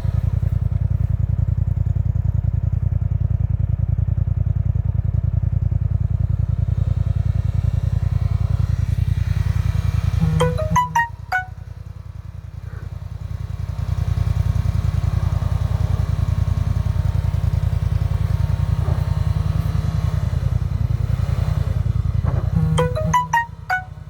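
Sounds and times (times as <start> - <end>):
car engine rumbling: 5.5 - 24.0
short pitched notes: 10.2 - 11.7, 22.6 - 24.0.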